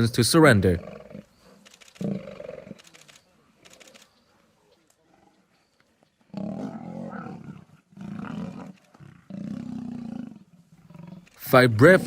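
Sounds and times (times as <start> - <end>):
lions roaring: 6.3 - 12.0.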